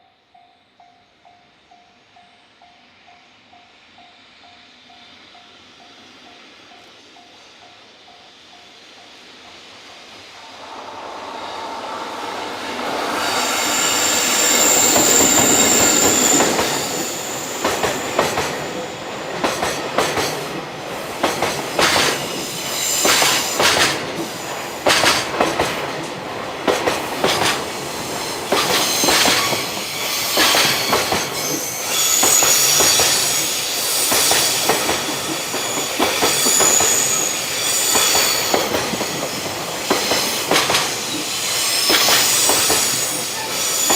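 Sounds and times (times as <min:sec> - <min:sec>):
freight train passing: 0:00.0 - 0:43.9
wheels squealing high screech: 0:10.2 - 0:18.2, 0:28.2 - 0:40.4, 0:41.0 - 0:43.9.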